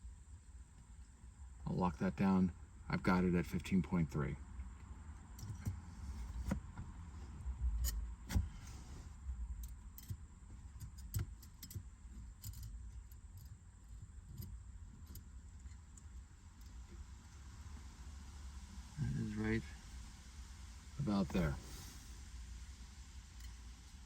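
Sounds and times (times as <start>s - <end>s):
low rumble of handling noise: 0.0s - 24.0s
light metallic clicks and taps: 9.6s - 17.0s.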